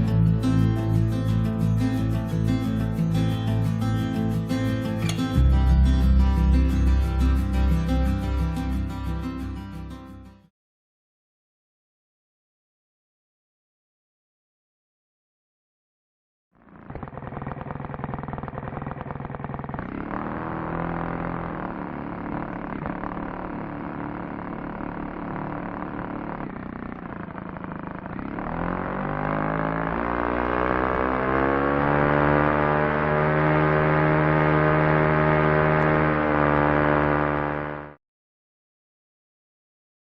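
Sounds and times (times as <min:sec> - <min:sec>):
engine running and speeding up: 0:00.0 - 0:10.1, 0:16.6 - 0:38.0.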